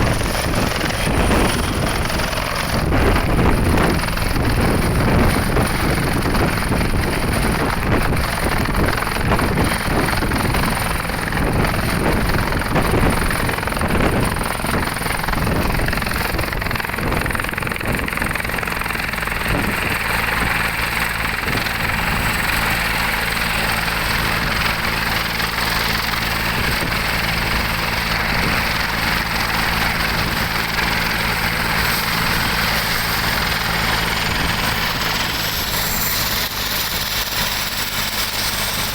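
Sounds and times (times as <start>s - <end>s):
helicopter turbine and rotor: 0.0s - 38.9s.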